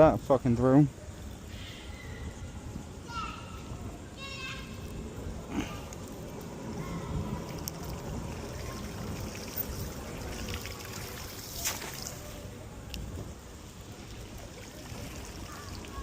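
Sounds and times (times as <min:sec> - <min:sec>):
water trickling and lapping: 0:04.6 - 0:16.0.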